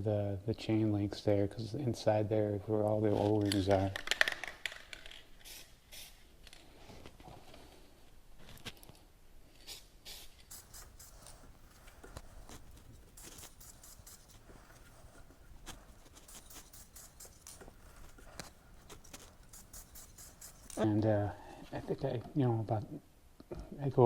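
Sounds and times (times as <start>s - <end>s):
aerosol spray hissing: 10.1s - 20.8s.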